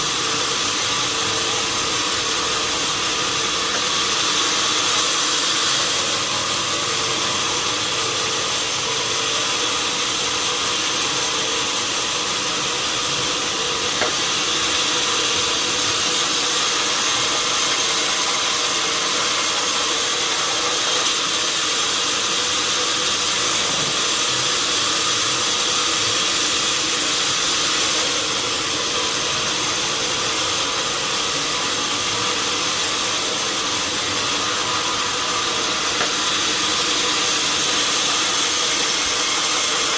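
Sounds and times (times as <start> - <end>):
sawmill machinery running: 0.0 - 39.9.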